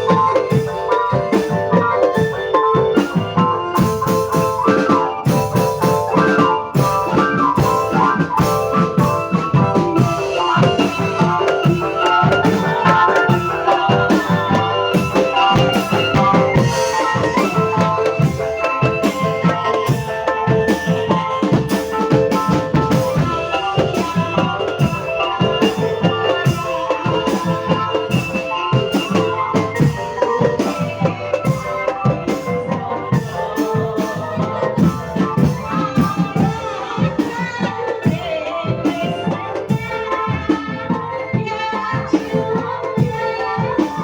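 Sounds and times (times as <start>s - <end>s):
held melodic instrument tones: 0.0s - 32.8s
busy steady drumming: 0.0s - 44.0s.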